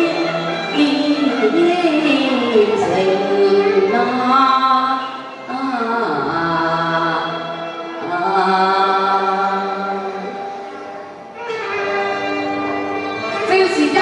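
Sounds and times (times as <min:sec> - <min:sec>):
person singing long notes: 0:00.0 - 0:10.8
instrumental accompaniment: 0:00.0 - 0:14.0.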